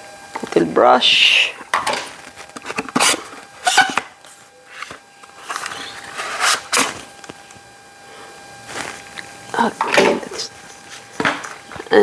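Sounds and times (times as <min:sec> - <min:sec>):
parts and packaging rubbing: 0:02.0 - 0:07.6, 0:08.6 - 0:09.4.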